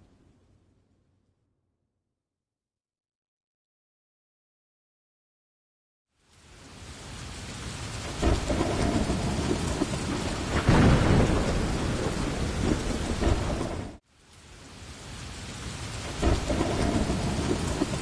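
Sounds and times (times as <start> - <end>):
heavy rain: 6.1 - 18.0
thunder crackling and rumbling: 6.4 - 14.0, 14.7 - 18.0.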